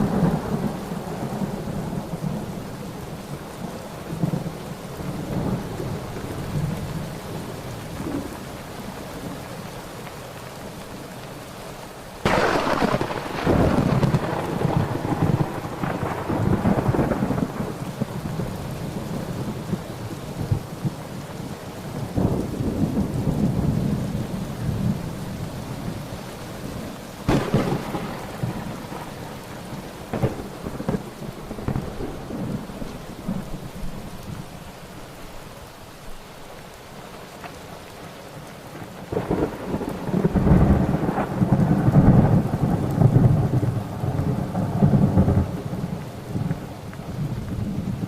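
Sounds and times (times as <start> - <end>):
steady rain: 0.0 - 48.0
sharp thunderclap: 12.2 - 17.8, 27.3 - 29.2, 30.1 - 32.6
rolling thunder: 12.2 - 19.8, 27.3 - 34.1, 39.1 - 48.0.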